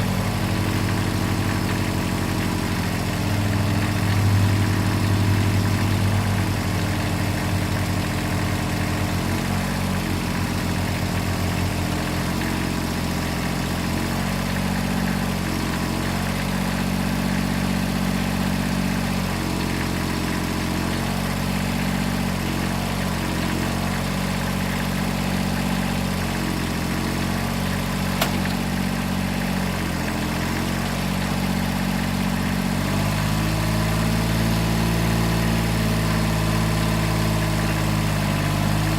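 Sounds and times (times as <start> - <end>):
tractor diesel engine running: 0.0 - 20.0, 24.8 - 34.3
sharp knock: 28.2 - 28.6.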